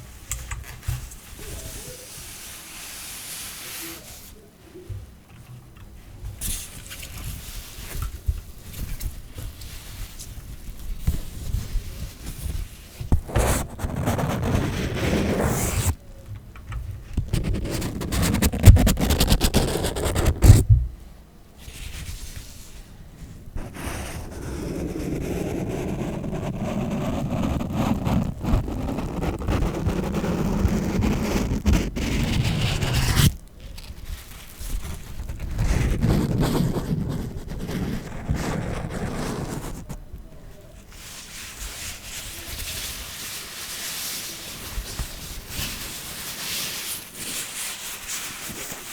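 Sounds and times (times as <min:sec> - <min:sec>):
packaging rustling and scraping: 0:08.8 - 0:16.0, 0:17.2 - 0:20.7
steady rubbing noise: 0:11.4 - 0:16.0, 0:17.2 - 0:20.8, 0:23.5 - 0:40.0.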